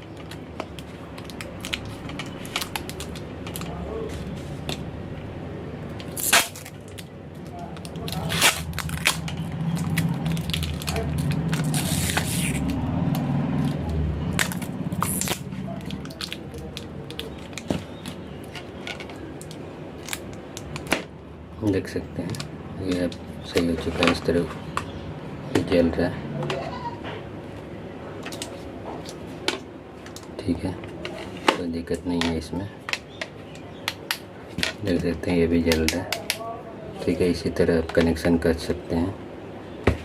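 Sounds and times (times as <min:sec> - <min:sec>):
steady low hum: 0:00.0 - 0:35.8.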